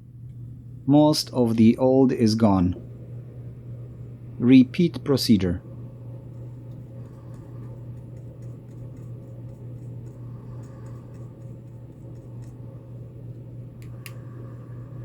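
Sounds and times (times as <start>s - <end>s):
steady low hum: 0.0s - 15.0s
faint scratching and ticking: 6.3s - 14.4s.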